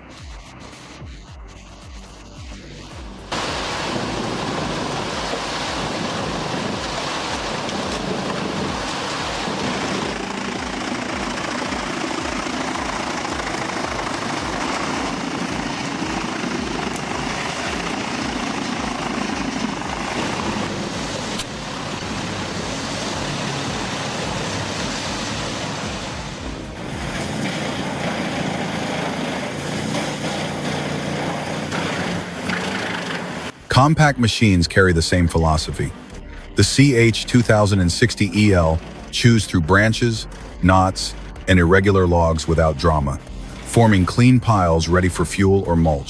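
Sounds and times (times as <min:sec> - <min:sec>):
wood chipper grinding: 0:01.6 - 0:33.7.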